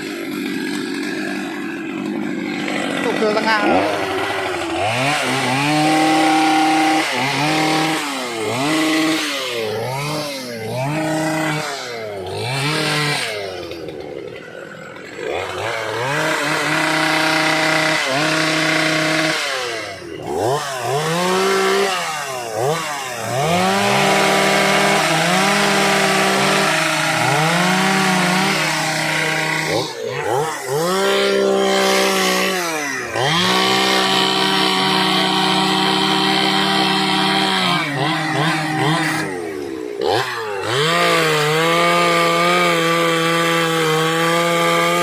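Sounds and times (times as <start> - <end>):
chainsaw revving cutting wood: 0.0 - 45.0.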